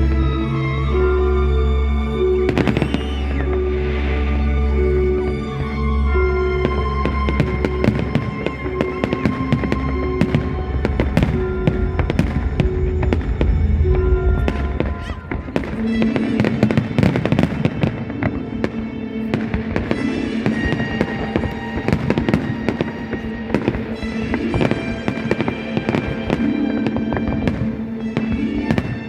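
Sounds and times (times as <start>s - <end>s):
music playing: 0.0s - 29.0s
fireworks bursting and crackling: 2.2s - 29.0s.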